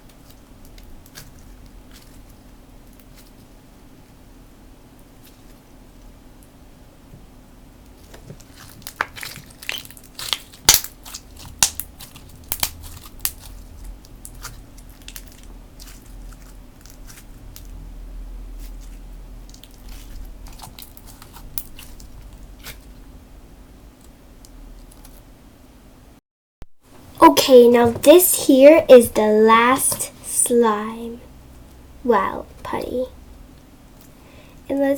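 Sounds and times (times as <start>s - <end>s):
slime crackling and popping: 8.4s - 17.8s, 18.8s - 22.9s.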